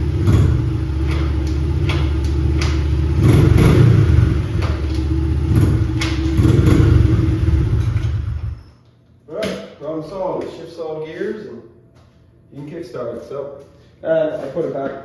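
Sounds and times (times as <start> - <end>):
small engine revving: 0.0 - 8.6.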